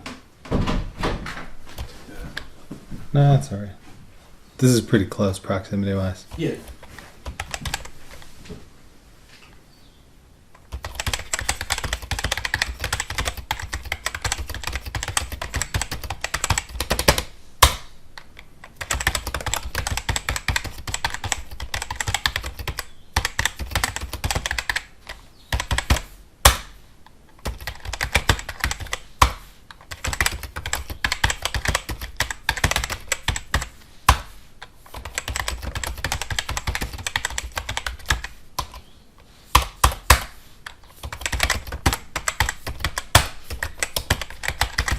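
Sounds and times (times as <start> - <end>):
fast typing on keyboard: 6.3 - 8.0, 10.6 - 17.3, 18.3 - 26.1, 27.4 - 34.2, 34.8 - 38.8, 39.6 - 44.9.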